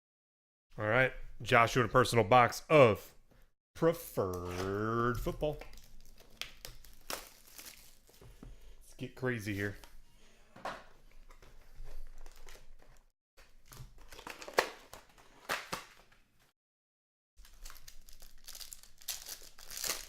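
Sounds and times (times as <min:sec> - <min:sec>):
packaging crinkling and tearing: 0:04.2 - 0:08.2, 0:12.1 - 0:16.1, 0:17.4 - 0:20.0.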